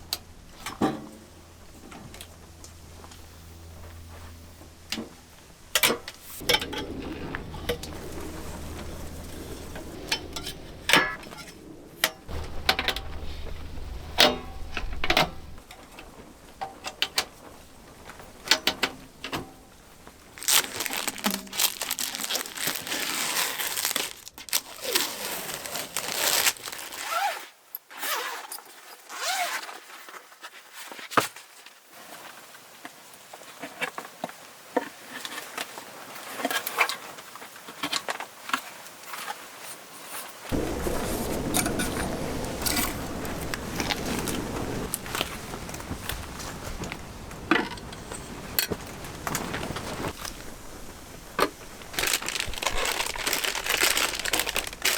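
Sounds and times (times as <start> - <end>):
rustling and crinkling: 0.0 - 27.5, 40.0 - 54.9
clicks and knocks of handled gear: 20.1 - 27.3, 40.5 - 54.9.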